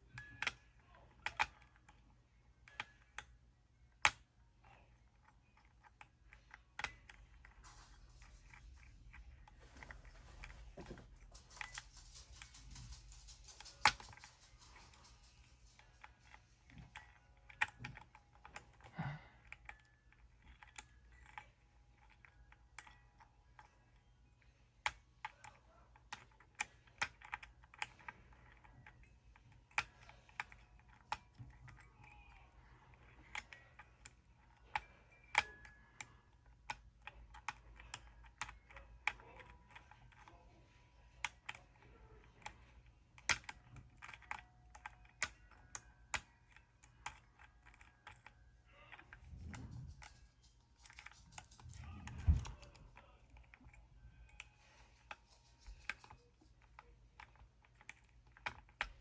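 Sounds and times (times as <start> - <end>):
faint low hum: 0.0 - 59.0
lock picks clicking on pins: 41.1 - 49.6.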